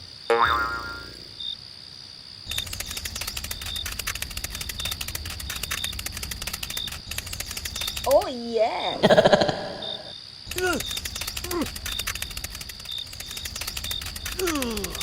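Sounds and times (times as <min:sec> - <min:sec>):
geared mechanism clicking: 0:02.5 - 0:08.2, 0:10.5 - 0:15.0.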